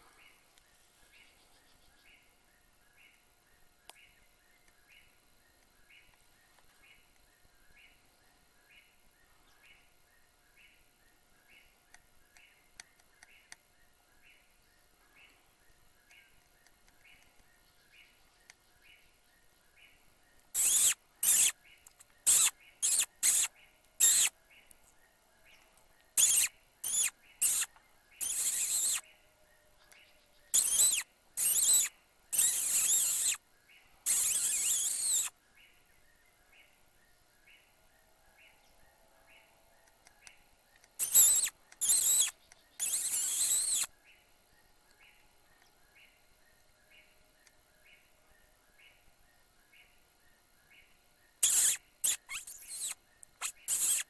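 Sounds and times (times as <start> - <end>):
shrill electronic squeals: 20.6 - 21.5, 22.3 - 24.3, 26.2 - 29.0, 30.6 - 33.4, 34.1 - 35.3, 41.0 - 43.9, 51.4 - 54.0.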